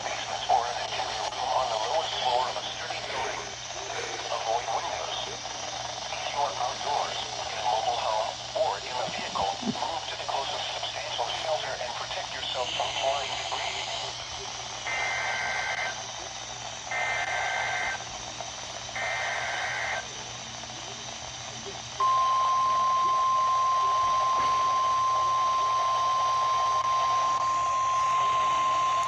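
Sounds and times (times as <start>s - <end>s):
steady alarm tone: 0.0s - 18.2s, 22.0s - 29.0s
warbling digital data tones: 22.0s - 29.0s.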